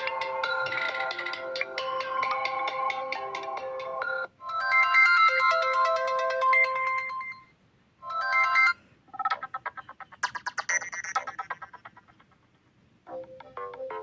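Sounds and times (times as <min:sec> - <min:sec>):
electronic ringtone melodies: 0:00.0 - 0:09.4.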